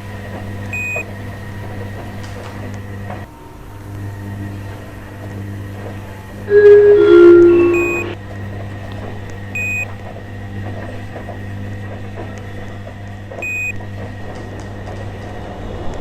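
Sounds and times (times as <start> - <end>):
short high beeps: 6.5 - 8.2.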